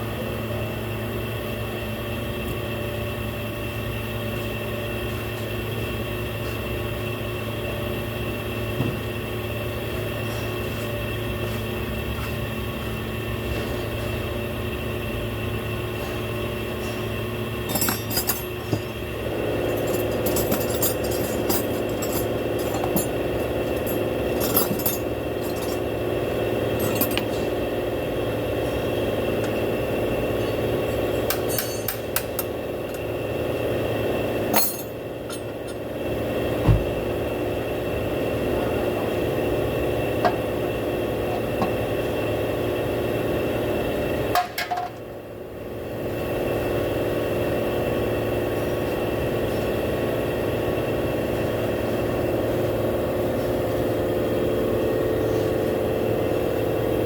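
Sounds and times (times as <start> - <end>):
steady mechanical hum: 0.0 - 57.0
sharp metallic clinks: 31.3 - 32.5.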